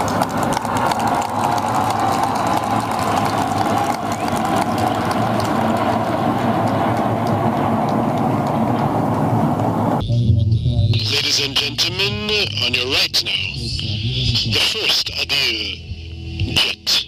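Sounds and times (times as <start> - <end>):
jet aircraft engine noise: 0.0 - 10.0.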